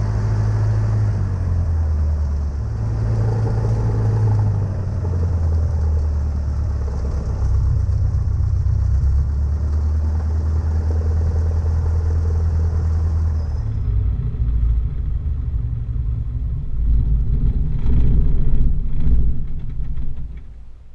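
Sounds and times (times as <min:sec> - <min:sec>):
aircraft engine running: 0:00.0 - 0:20.9.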